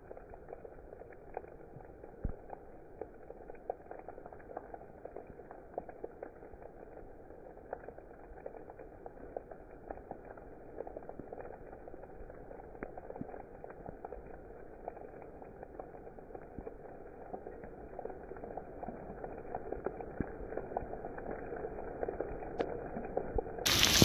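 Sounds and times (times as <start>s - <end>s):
rain hiss: 0.0s - 24.0s.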